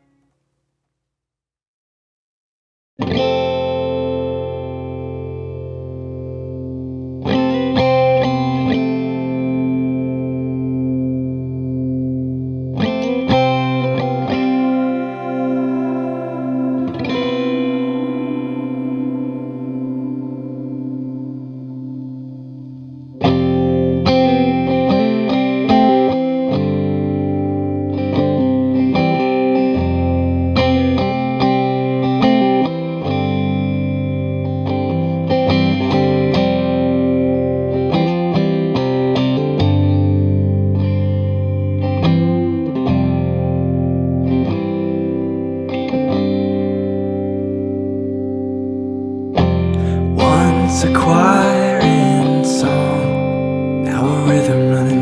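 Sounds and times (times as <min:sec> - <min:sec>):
distorted electric guitar chords: 0:09.2 - 0:25.6
held chord: 0:13.6 - 0:22.1, 0:49.8 - 0:55.0.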